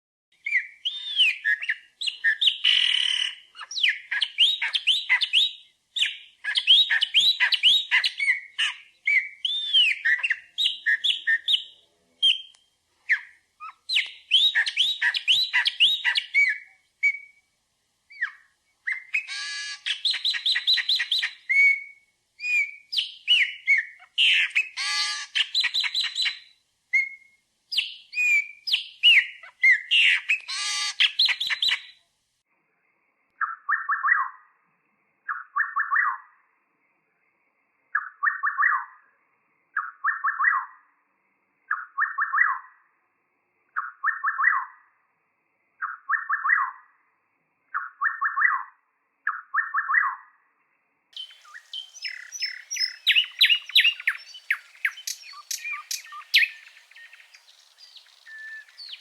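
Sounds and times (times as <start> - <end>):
songbird singing: 0.3 - 32.1, 33.2 - 43.0, 43.7 - 59.0
harsh rasping bird notes: 51.2 - 59.0.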